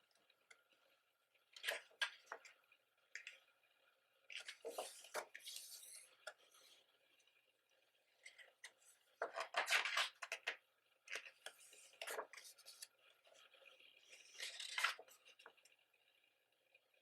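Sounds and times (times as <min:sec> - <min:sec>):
paper rustling: 0:04.4 - 0:06.0.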